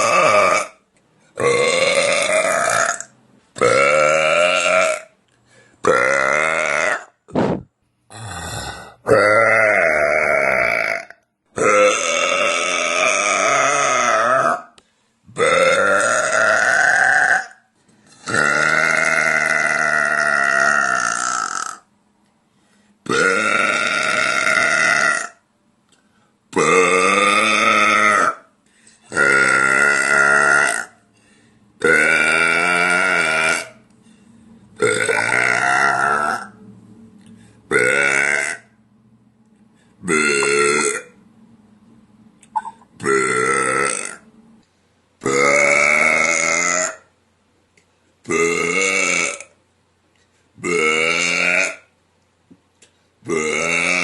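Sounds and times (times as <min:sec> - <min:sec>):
woman belching: 0:00.0 - 0:00.8, 0:01.4 - 0:05.1, 0:05.8 - 0:07.2, 0:08.1 - 0:14.7, 0:15.4 - 0:17.6, 0:18.2 - 0:21.8, 0:23.1 - 0:25.4, 0:29.1 - 0:30.9, 0:34.8 - 0:36.6, 0:37.7 - 0:38.7, 0:40.1 - 0:41.1, 0:42.6 - 0:44.2, 0:45.2 - 0:47.0, 0:48.3 - 0:49.5, 0:50.6 - 0:51.9, 0:53.3 - 0:54.0.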